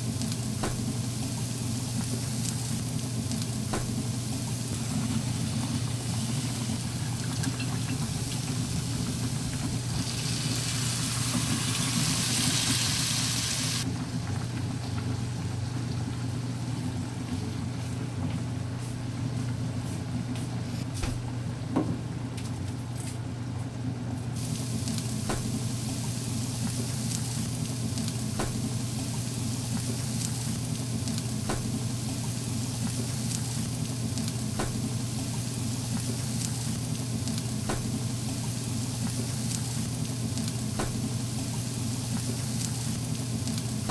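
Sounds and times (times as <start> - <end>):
food sizzling in frying pan: 0.0 - 13.9, 24.4 - 43.9.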